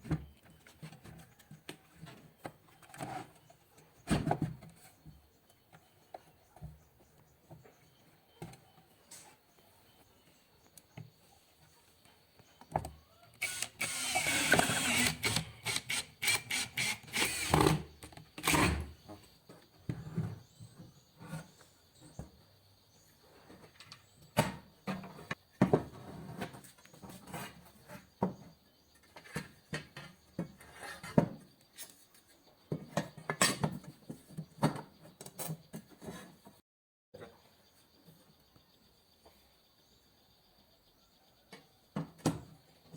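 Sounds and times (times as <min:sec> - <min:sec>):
tool scraping: 0:13.4 - 0:18.9.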